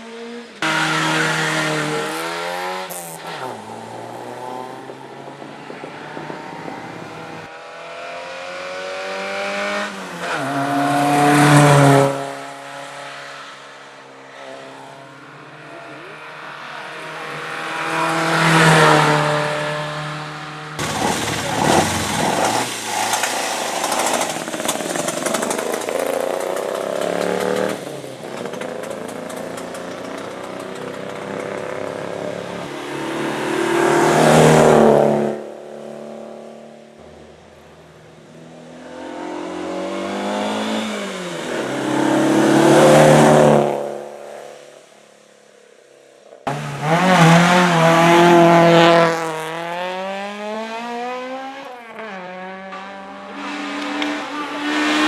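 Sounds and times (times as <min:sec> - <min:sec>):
racing car engines accelerating: 0:00.0 - 0:44.6, 0:46.5 - 0:55.0.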